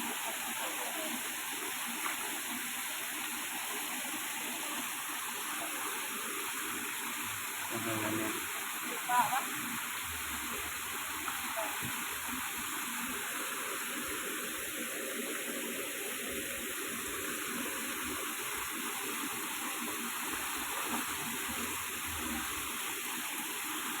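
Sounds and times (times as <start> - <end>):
waterfall rushing: 16.2 - 24.0.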